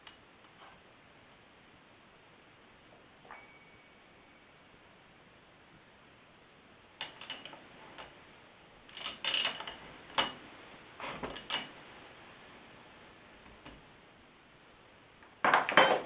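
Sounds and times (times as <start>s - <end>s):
small metal clicks and clacks: 7.0s - 8.1s, 8.9s - 10.4s.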